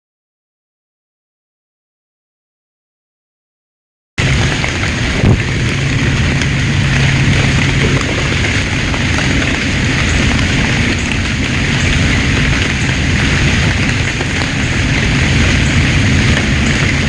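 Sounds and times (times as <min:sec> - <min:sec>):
low continuous rumble: 0:04.2 - 0:17.0
low hum: 0:04.2 - 0:17.0
rain falling: 0:04.2 - 0:17.0.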